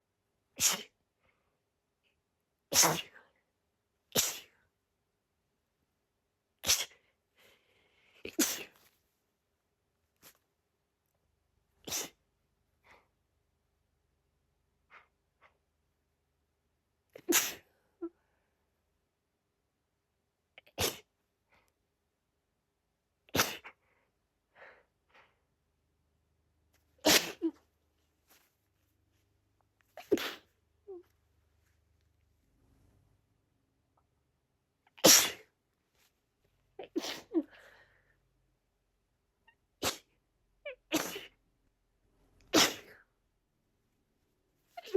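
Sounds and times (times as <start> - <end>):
woman sneezing: 0.6 - 1.0, 2.7 - 3.2, 4.1 - 4.6, 6.6 - 7.0, 8.3 - 8.8, 11.9 - 12.2, 17.2 - 17.7, 20.7 - 21.1, 23.3 - 23.8, 27.0 - 27.6, 30.0 - 30.6, 35.0 - 35.5, 36.8 - 37.6, 39.8 - 40.1, 40.9 - 41.4, 42.5 - 43.0.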